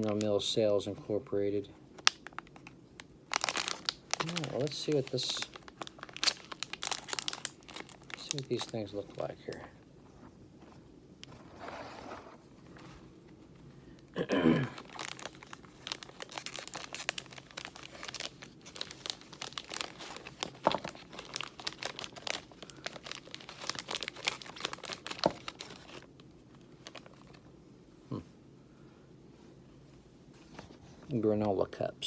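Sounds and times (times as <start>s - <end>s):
plastic wrapper crinkling and tearing: 1.9s - 9.7s, 14.7s - 27.5s.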